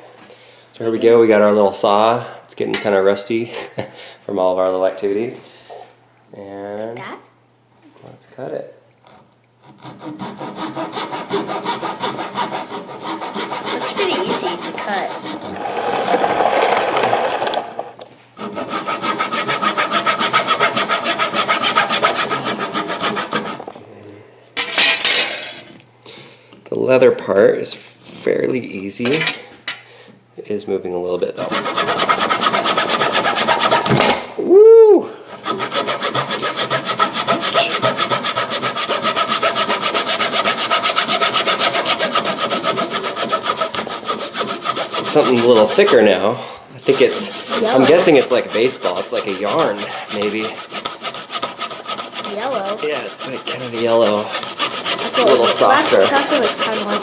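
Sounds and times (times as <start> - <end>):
hand saw rasping through leather: 9.1 - 17.6, 18.4 - 23.7, 31.4 - 34.0, 35.3 - 46.2, 46.8 - 57.0.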